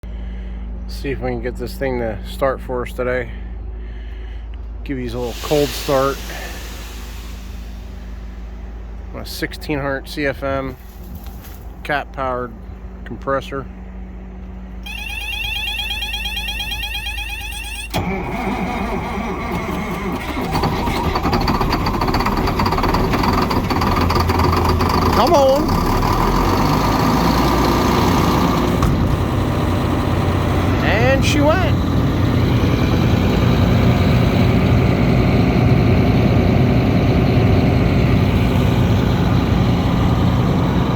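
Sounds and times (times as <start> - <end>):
diesel engine cranking: 3.4 - 9.5, 13.7 - 40.9
warbling electronic warning tone: 14.8 - 18.0.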